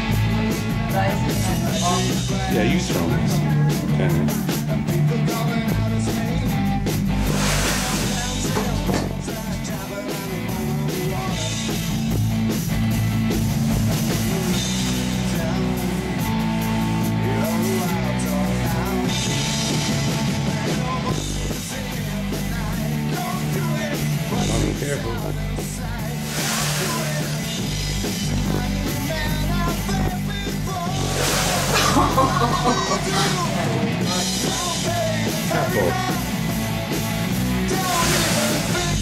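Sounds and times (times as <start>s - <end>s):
rock music with singing: 0.0s - 39.0s.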